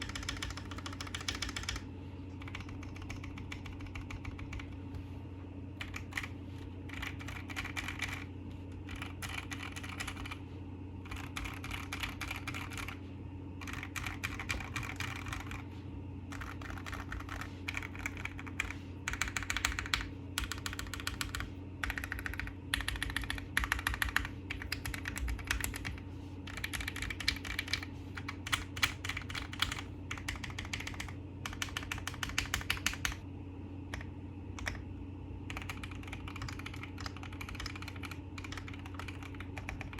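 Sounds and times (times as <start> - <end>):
mechanical keyboard typing: 0.0 - 1.8, 2.4 - 4.8, 5.8 - 10.4, 11.0 - 13.0, 13.6 - 15.6, 16.3 - 33.2, 33.9 - 34.8, 35.5 - 39.9.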